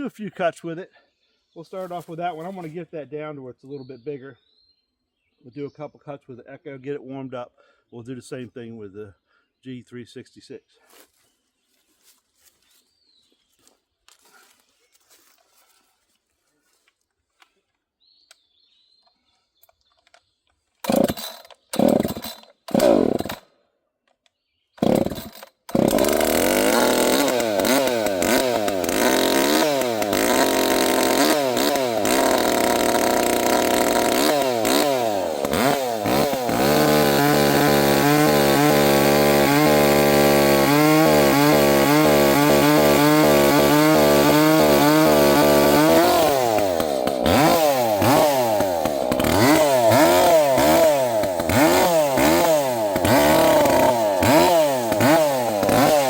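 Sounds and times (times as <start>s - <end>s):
chainsaw pull-starting: 19.6s - 23.5s, 24.8s - 56.0s
chainsaw cutting wood: 20.8s - 23.6s, 24.7s - 56.0s.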